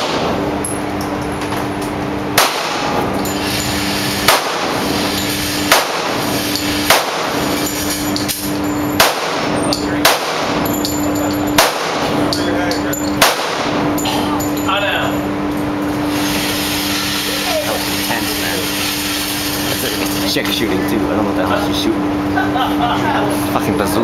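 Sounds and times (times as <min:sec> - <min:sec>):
gunshots: 0:00.0 - 0:00.4, 0:02.4 - 0:03.1, 0:04.2 - 0:04.8, 0:05.7 - 0:07.6, 0:09.0 - 0:10.6, 0:11.6 - 0:12.2, 0:13.2 - 0:13.8
steady background hum: 0:00.0 - 0:24.0.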